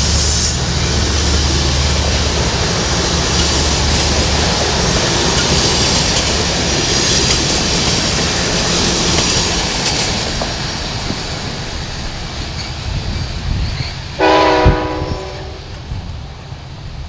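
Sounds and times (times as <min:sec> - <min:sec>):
train rumble and wheel noise: 0:00.0 - 0:17.0
train horn blast: 0:14.2 - 0:15.9.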